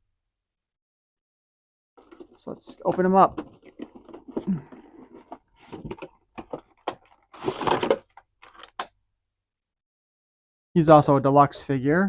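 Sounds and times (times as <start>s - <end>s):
packaging rustling scrape: 2.0s - 8.8s
packaging clicks and taps: 2.0s - 8.9s.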